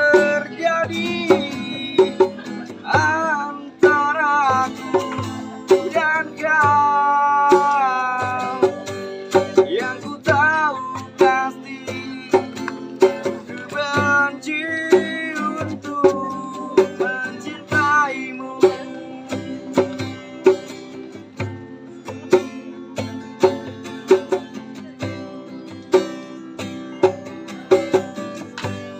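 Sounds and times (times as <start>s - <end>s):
plucked string instrument strumming: 0.0s - 28.9s.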